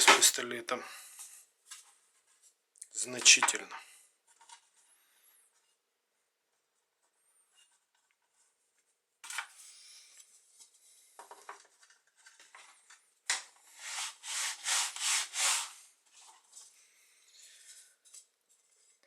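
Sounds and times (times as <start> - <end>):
rolling table scraping dough: 13.7 - 15.8.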